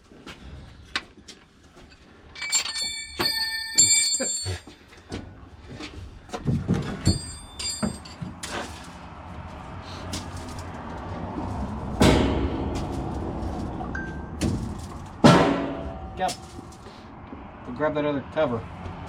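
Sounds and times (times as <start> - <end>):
metal parts clanging: 2.3 - 4.7, 7.0 - 8.5
dull knocks and thuds: 6.3 - 7.2.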